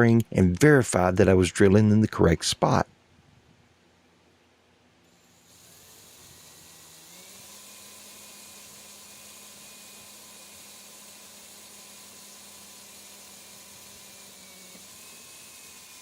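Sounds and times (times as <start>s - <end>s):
electric drill whining: 5.1s - 16.0s.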